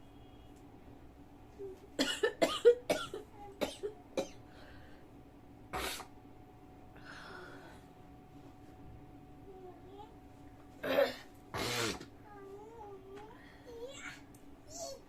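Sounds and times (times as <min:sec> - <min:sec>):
woman coughing: 0:02.0 - 0:04.4, 0:10.8 - 0:12.0.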